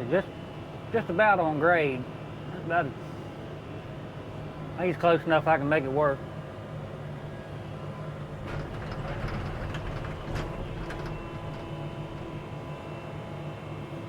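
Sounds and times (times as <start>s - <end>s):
hydraulic whine: 7.5s - 13.4s
excavator engine running: 7.6s - 13.4s
bucket knocking and scraping rock: 8.4s - 12.4s.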